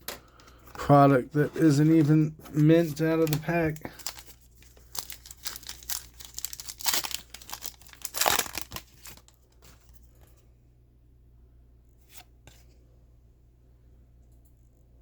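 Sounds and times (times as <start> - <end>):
foil wrapper crinkling and tearing: 1.7 - 9.9.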